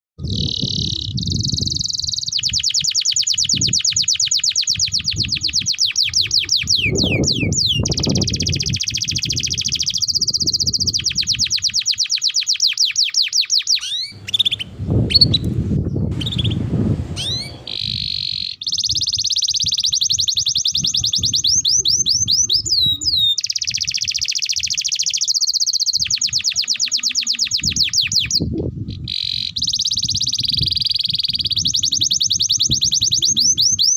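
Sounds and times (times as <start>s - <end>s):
canary singing trills: 0.2s - 33.9s
low noise: 14.1s - 18.1s.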